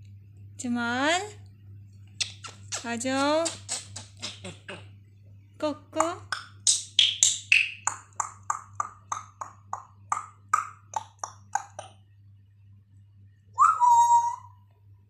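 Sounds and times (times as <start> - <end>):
parrot whistled note: 13.6 - 14.6.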